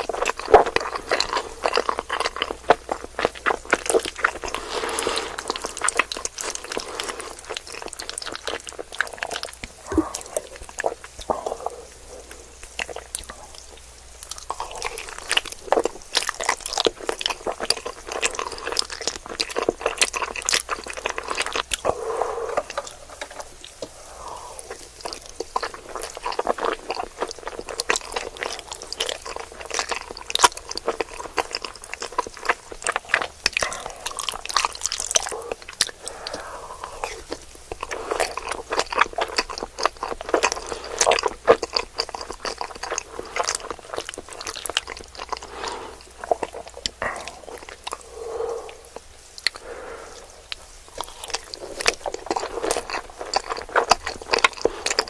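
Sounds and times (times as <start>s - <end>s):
person chewing food: 0.0s - 55.0s
mouth clicks: 45.2s - 55.0s.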